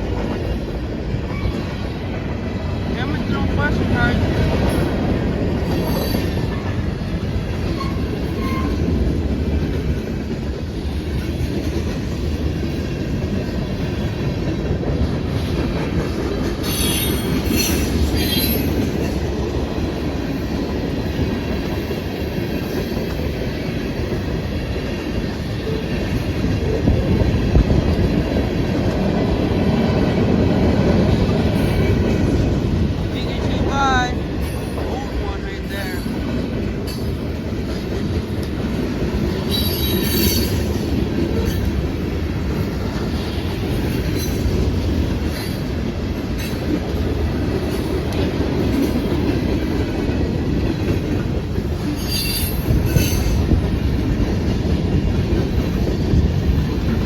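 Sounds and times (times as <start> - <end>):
train wheels rumbling on rail: 0.0 - 57.0
high-pitched wheel squeal: 39.5 - 40.6.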